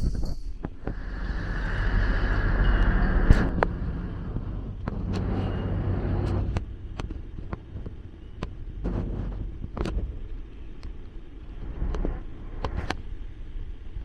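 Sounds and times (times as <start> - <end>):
street traffic rumble: 0.0 - 14.0
vehicles passing: 0.8 - 14.0.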